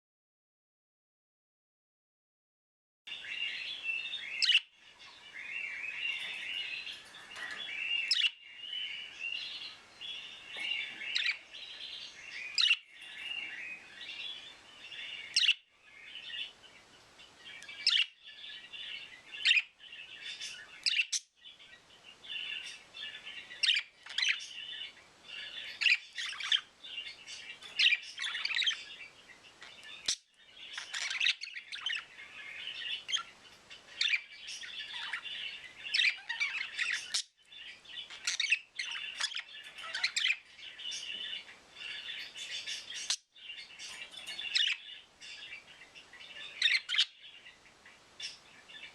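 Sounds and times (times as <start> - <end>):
high bird chirps: 3.1 - 16.6, 17.5 - 48.9
budgerigars chattering: 3.7 - 16.5, 25.3 - 47.2.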